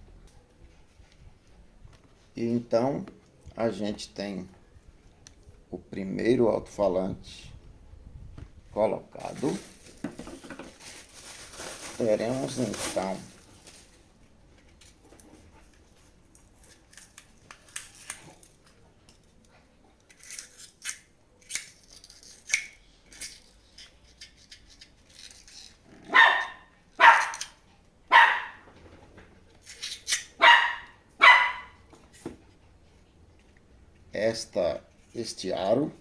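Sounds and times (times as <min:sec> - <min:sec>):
dog barking: 0:26.1 - 0:27.5, 0:28.1 - 0:28.6, 0:30.4 - 0:31.8.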